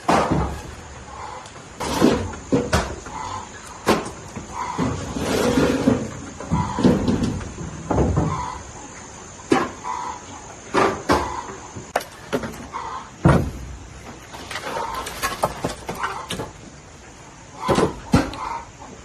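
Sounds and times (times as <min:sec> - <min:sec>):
sharp knocks and thuds: 0:00.0 - 0:00.8, 0:01.8 - 0:03.0, 0:10.7 - 0:16.6.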